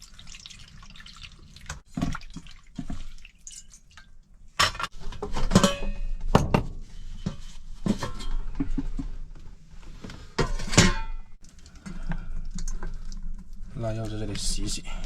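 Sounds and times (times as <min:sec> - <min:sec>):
dishes and pots clinking: 0:04.6 - 0:09.1, 0:10.4 - 0:11.3.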